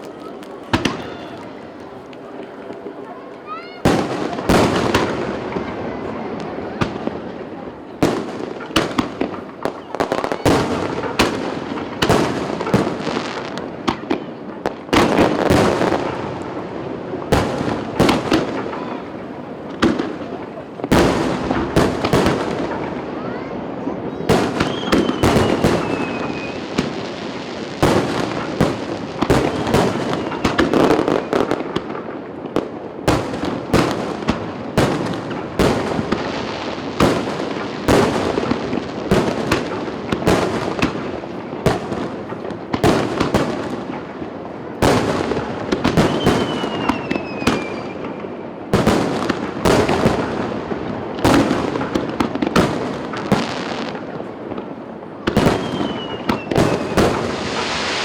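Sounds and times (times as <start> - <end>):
firework crackling: 0.0 - 58.0
falling firework whistles: 24.2 - 27.0, 29.1 - 31.6, 45.9 - 48.2, 55.4 - 58.0.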